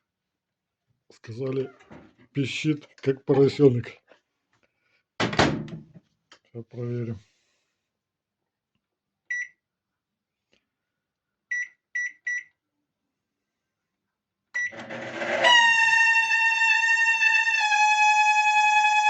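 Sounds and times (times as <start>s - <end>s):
microwave keypad beeps: 9.3s - 9.6s, 11.5s - 12.5s, 14.6s - 14.8s
microwave oven hum: 14.6s - 16.1s
high-pitched fan squeal: 14.7s - 19.0s.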